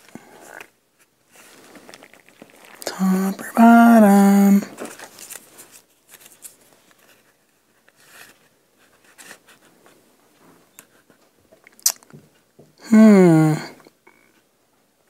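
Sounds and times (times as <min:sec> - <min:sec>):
paper rustling and scraping: 0:01.3 - 0:02.8, 0:04.7 - 0:11.1.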